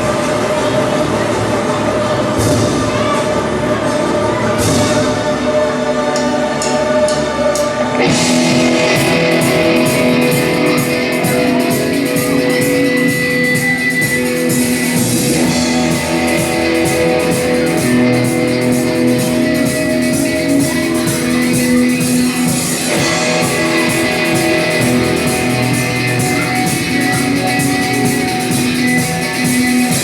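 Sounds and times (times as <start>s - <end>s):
strummed guitar: 4.5s - 30.0s
drum kit: 6.1s - 30.0s.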